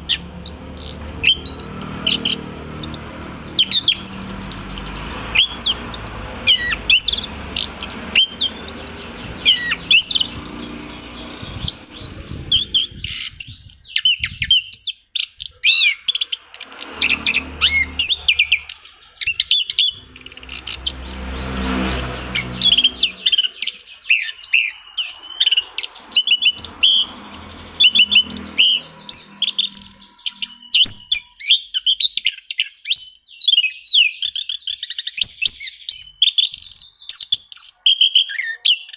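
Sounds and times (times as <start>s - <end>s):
thrush singing whistles and chirps: 0.0s - 38.9s
low rumble: 16.6s - 23.5s.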